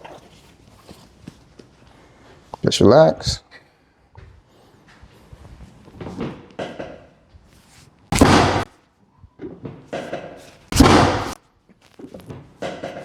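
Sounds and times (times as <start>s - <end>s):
loud thuds on treatment table: 8.1s - 8.7s, 10.7s - 11.4s.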